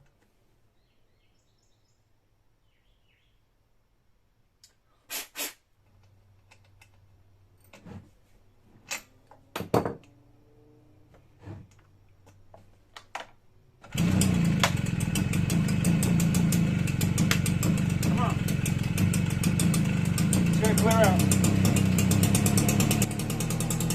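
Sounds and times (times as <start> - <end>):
two-stroke engine running: 13.8 - 23.9.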